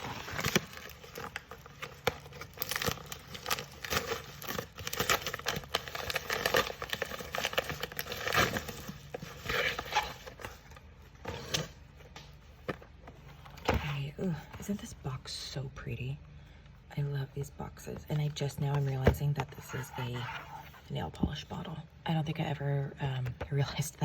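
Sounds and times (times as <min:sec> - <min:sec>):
packaging crinkling and ripping: 0:00.0 - 0:13.6.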